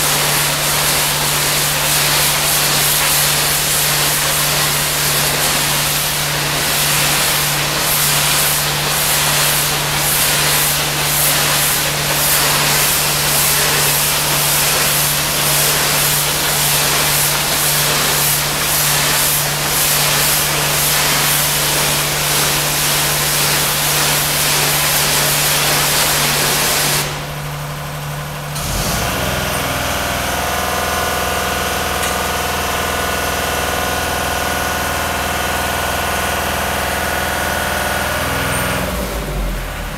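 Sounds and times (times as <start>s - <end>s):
pressure washer spray hissing: 0.0s - 27.3s
pressure washer engine: 0.0s - 39.9s.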